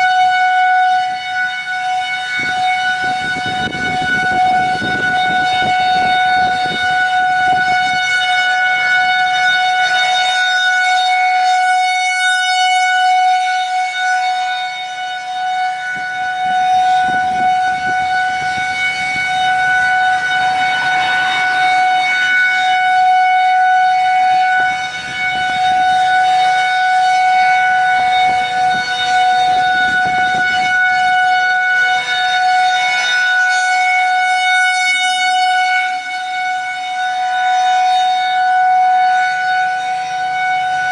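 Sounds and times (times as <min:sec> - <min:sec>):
warning siren steady tone: 0:00.0 - 0:40.9.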